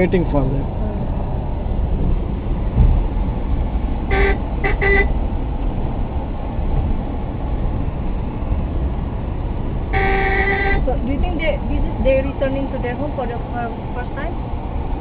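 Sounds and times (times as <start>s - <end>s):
road traffic rumble: 0.0s - 15.0s
vehicle horn toots: 4.1s - 5.2s, 9.9s - 10.9s.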